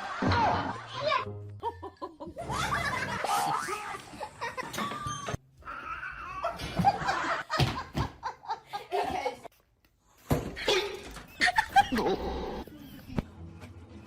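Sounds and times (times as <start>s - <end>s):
people laughing: 0.0s - 5.0s, 6.4s - 9.5s, 10.6s - 13.1s.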